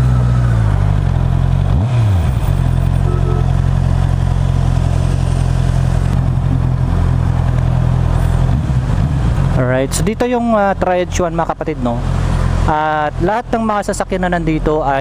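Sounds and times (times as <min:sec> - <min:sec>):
motorcycle engine running: 0:00.0 - 0:10.8.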